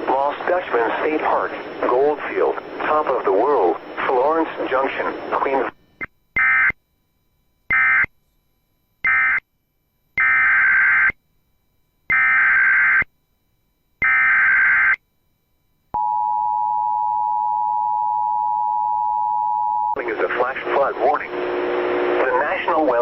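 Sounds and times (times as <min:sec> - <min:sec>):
data tone bursts: 0:06.0 - 0:06.8.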